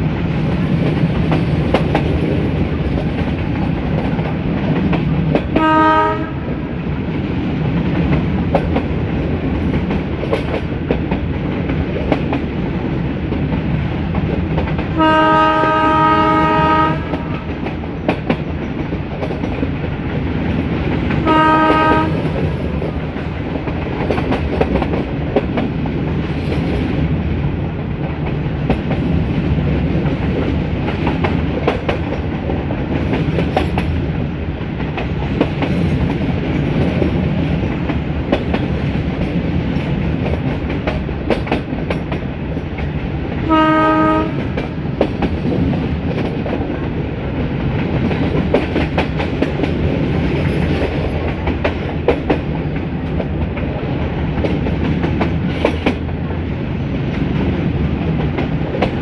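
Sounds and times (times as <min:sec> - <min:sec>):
train rumble: 0:00.0 - 0:59.0
train wheels clicking over rail joints: 0:00.2 - 0:59.0
locomotive horn blasts: 0:05.6 - 0:06.4, 0:15.0 - 0:17.4, 0:21.2 - 0:22.2, 0:43.5 - 0:44.4.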